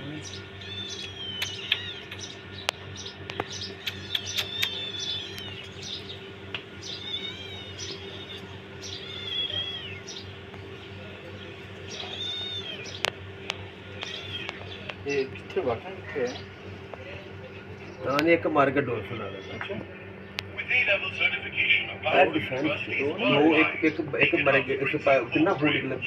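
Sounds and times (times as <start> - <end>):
kittens mewing: 0.0 - 17.7, 19.0 - 19.9
steady low hum: 0.0 - 26.0.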